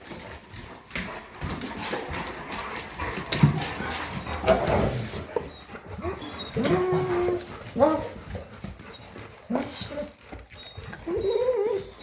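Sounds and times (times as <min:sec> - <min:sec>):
dogs whining and yipping: 0:04.0 - 0:12.0.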